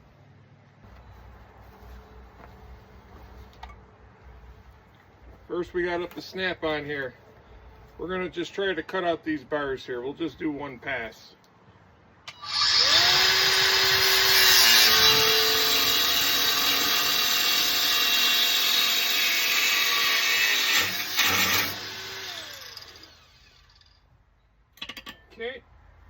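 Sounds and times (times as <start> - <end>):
angle grinder cutting metal: 12.3 - 23.9.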